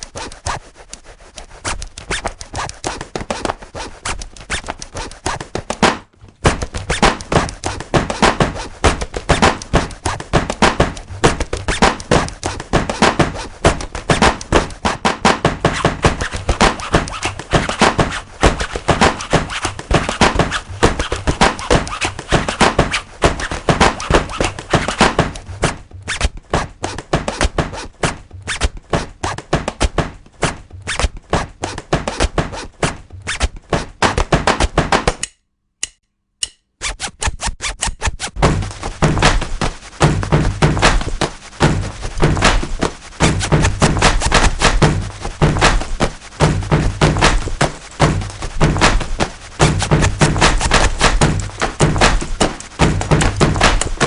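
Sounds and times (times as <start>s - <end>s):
percussive thuds and clicks: 0.0s - 35.3s, 37.3s - 54.0s.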